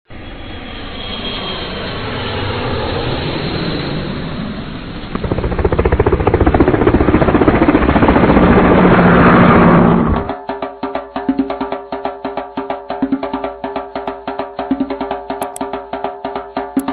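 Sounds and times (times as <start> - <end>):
helicopter rotor chopping: 2.0 - 10.4.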